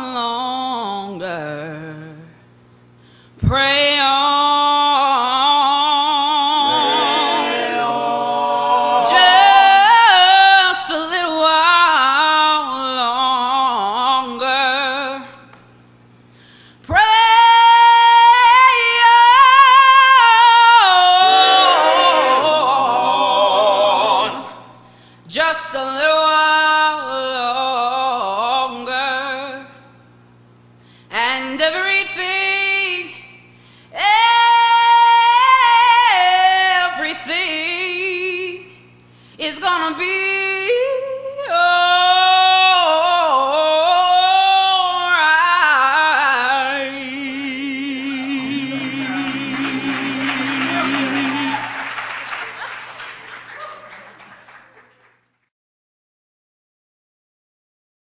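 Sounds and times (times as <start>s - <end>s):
woman singing gospel runs: 0.0s - 2.4s, 9.0s - 15.6s, 16.8s - 23.0s, 25.3s - 29.7s, 39.4s - 55.2s
faint sustained backing: 6.6s - 10.3s, 47.4s - 52.7s.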